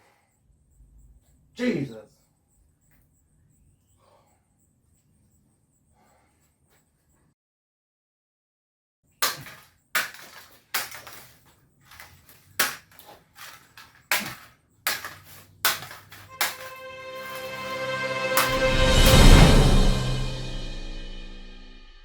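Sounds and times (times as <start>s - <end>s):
music: 16.3s - 22.0s
sharp ringing hits: 16.3s - 22.0s.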